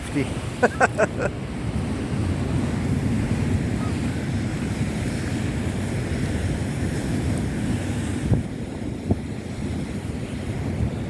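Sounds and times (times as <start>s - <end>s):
sea waves breaking on shore: 0.0s - 11.0s
wind buffeting microphone: 0.0s - 11.0s.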